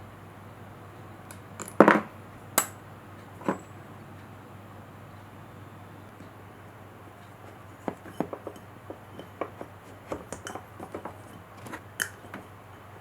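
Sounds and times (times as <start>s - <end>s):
steady low hum: 0.0s - 13.0s
hand tools clicking and tapping: 1.3s - 2.8s, 3.4s - 3.7s, 7.3s - 12.9s.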